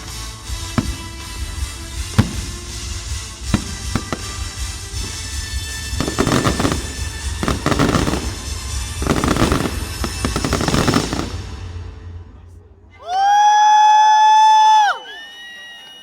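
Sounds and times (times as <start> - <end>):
fireworks crackling: 0.0 - 12.6
fireworks bangs: 0.0 - 13.0
music: 0.0 - 13.1.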